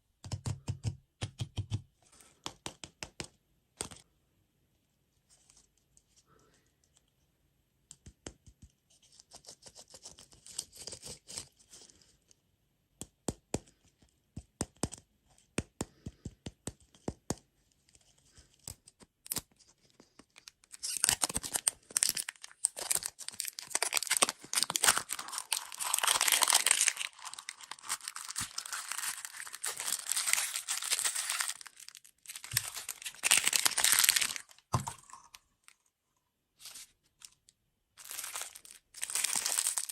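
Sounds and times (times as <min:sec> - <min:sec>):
plastic packaging crinkling and tearing: 0:20.3 - 0:35.3, 0:38.0 - 0:39.9.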